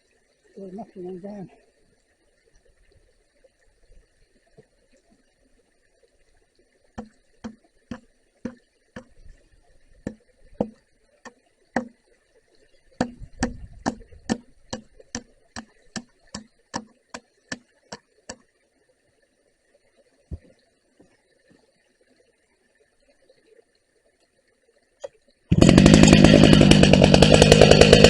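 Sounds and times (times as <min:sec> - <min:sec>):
hammer striking nails: 0:13.0 - 0:14.9.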